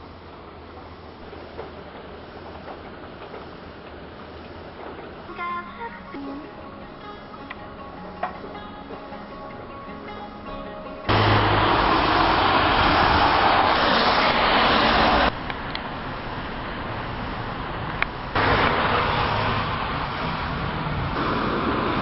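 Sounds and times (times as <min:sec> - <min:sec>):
rushing noise of wet street: 0:11.1 - 0:22.0.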